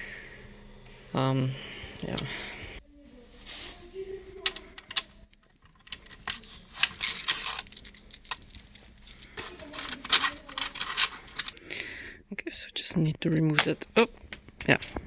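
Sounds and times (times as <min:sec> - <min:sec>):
tools clicking and scraping: 0:04.4 - 0:11.6.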